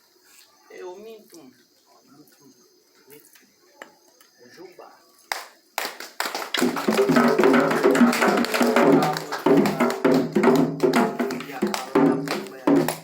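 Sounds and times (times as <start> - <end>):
hand drums rhythm: 6.6 - 13.0.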